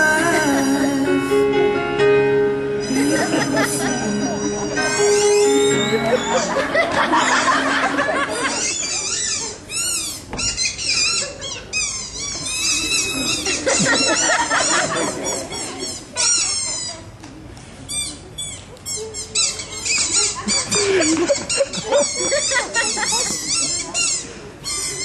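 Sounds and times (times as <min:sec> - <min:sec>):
high-pitched bird-like chirps: 0:02.8 - 0:06.6.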